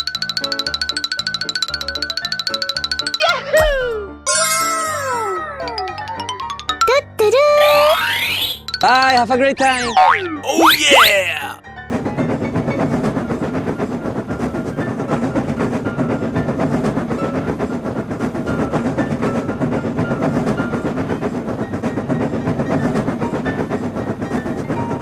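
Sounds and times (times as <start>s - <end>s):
train wheels clickety-clack: 11.9s - 25.0s.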